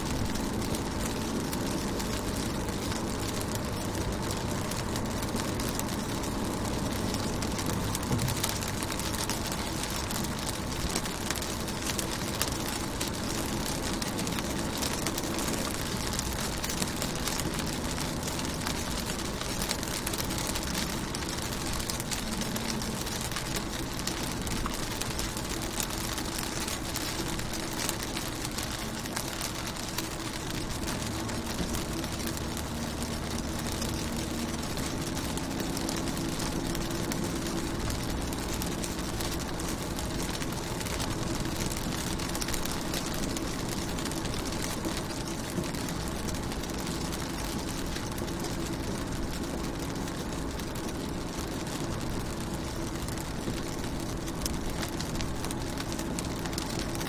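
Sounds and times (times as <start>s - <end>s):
rain hissing on car windows: 0.0s - 57.0s
raindrop ticks: 0.0s - 57.0s.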